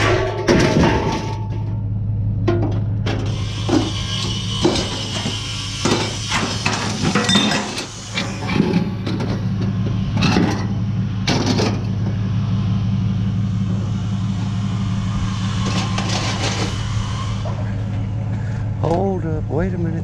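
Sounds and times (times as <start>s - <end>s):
metal scrap clanking: 0.0s - 12.2s, 15.4s - 18.3s
vehicle engine idling: 0.0s - 20.0s.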